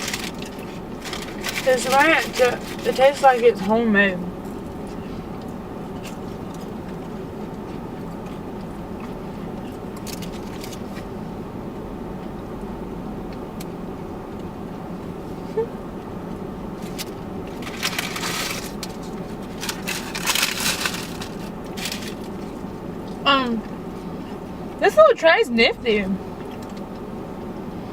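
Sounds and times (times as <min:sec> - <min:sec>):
crackly crunching eating: 0:00.0 - 0:03.6, 0:04.4 - 0:11.2, 0:16.0 - 0:24.5, 0:26.3 - 0:27.5
car interior hum: 0:00.0 - 0:27.9.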